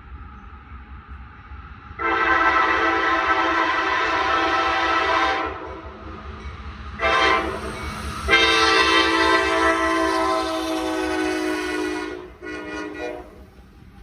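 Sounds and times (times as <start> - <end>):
locomotive air horn: 2.0 - 5.7, 7.0 - 13.6.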